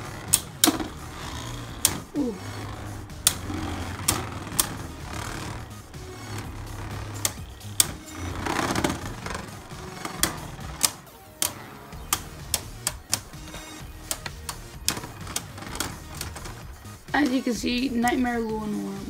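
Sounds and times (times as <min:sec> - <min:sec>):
spinning tops grinding scrape: 0:00.0 - 0:19.0.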